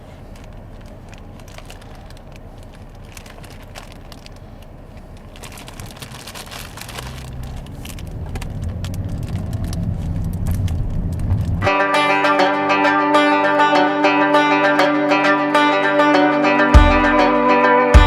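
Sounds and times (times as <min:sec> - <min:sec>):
plastic packet crinkling: 0:00.2 - 0:11.6
low rumble: 0:06.7 - 0:11.7.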